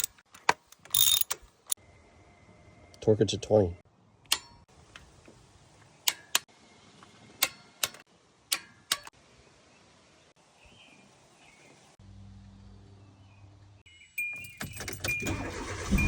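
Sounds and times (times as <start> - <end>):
torque wrench clicks: 0.0 - 1.8.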